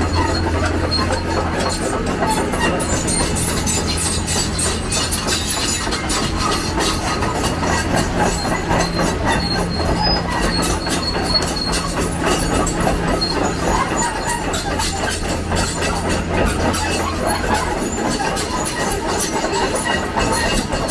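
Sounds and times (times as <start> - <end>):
excavator engine running: 0.0 - 20.9
steel tracks clanking: 0.0 - 20.9
thin metallic squeal: 0.0 - 20.9.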